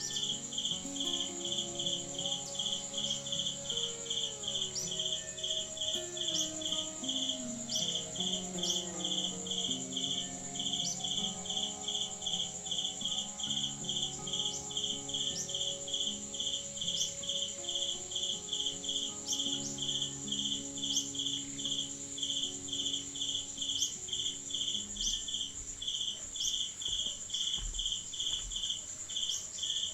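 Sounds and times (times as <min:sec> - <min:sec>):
insects chirping: 0:00.0 - 0:29.9.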